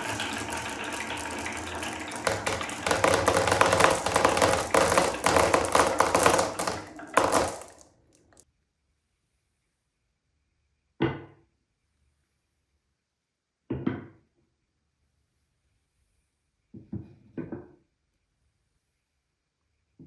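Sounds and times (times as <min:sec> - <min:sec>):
marbles clattering down wooden run: 0:00.0 - 0:08.4.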